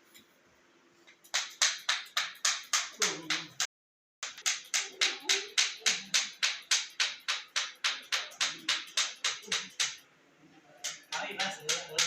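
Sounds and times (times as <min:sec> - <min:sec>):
hand slapping the body: 0:01.3 - 0:03.7.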